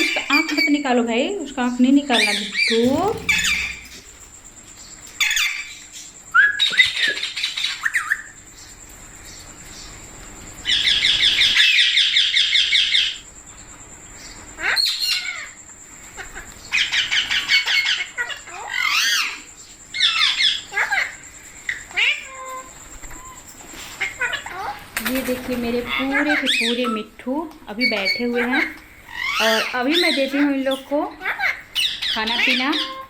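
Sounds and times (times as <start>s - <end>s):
parrots screeching calls: 16.2s - 19.4s, 27.9s - 33.0s
parrots chattering: 27.8s - 33.0s.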